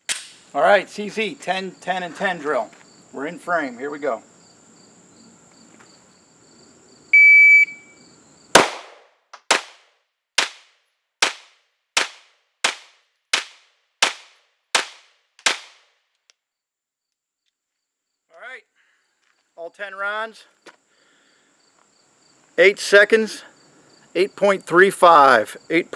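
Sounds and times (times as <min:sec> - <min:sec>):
shot timer beep: 0:07.2 - 0:07.9
pistol shots: 0:08.6 - 0:09.8, 0:11.2 - 0:15.8.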